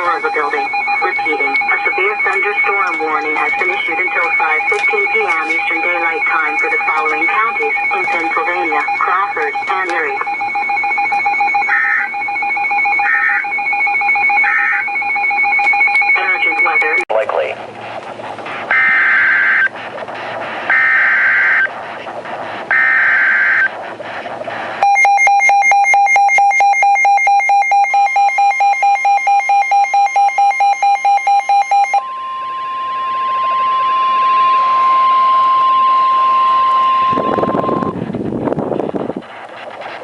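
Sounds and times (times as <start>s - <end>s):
screeching digital data bursts: 0.0s - 17.0s, 18.7s - 19.7s, 20.7s - 21.7s, 22.7s - 23.7s
fast pulsing beeps: 0.0s - 17.1s, 18.5s - 38.0s
steady warning tone: 0.0s - 40.0s.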